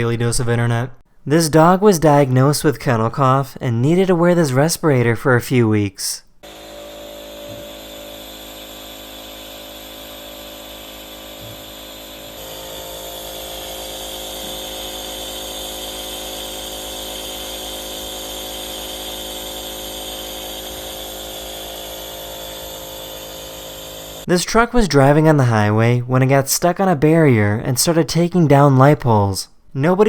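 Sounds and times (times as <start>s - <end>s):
respirator pump hissing: 6.4s - 24.3s.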